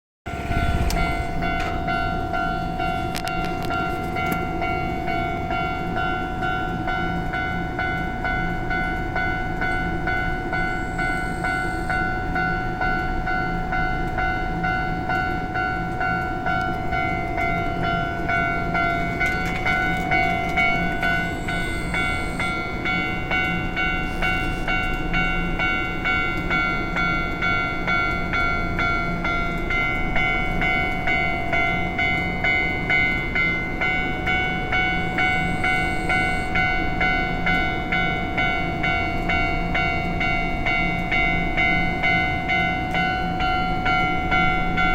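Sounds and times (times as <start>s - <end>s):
higher ringing tone: 0.3s - 6.9s, 10.1s - 13.0s, 16.2s - 26.9s, 29.0s - 38.0s
electric train rumbling past: 0.3s - 44.9s
level-crossing alarm ringing: 0.3s - 44.9s.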